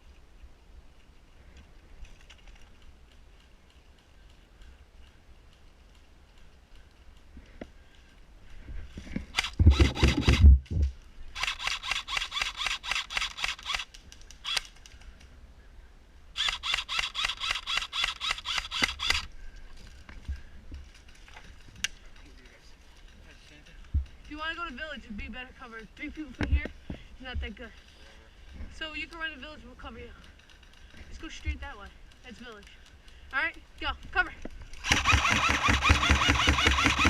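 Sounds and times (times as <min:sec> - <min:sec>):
airsoft gun full-auto fire: 0:09.3 - 0:10.5, 0:11.4 - 0:13.9, 0:16.4 - 0:19.2, 0:34.8 - 0:37.0.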